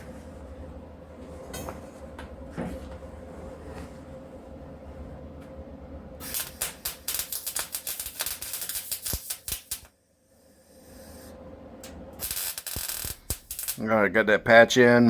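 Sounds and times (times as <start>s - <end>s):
low shop hum: 0.0s - 15.0s
welding arc crackling: 6.2s - 9.9s, 11.1s - 14.1s.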